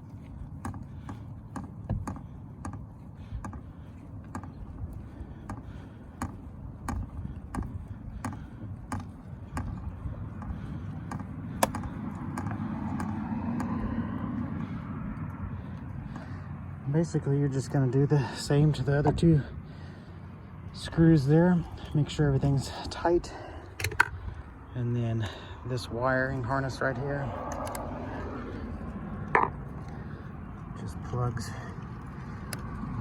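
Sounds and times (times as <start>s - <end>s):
low outdoor rumble: 0.0s - 33.0s.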